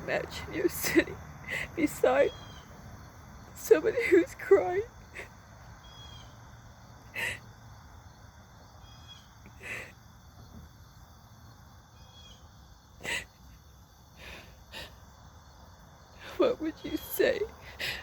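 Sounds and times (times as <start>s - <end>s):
outdoor background noise: 0.0s - 18.0s
faint chirps: 1.0s - 3.7s
sniffles: 7.1s - 7.5s, 9.5s - 10.0s, 13.0s - 13.6s, 14.2s - 15.0s.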